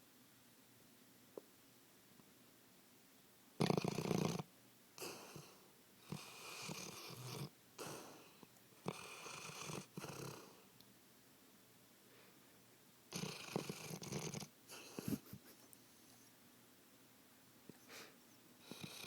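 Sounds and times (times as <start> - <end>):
dog snoring: 3.6 - 10.6, 13.1 - 15.3, 18.6 - 19.0.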